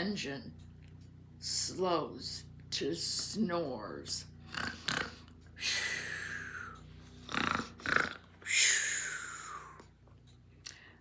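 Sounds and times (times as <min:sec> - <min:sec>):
woman imitating snoring: 0:04.4 - 0:09.8.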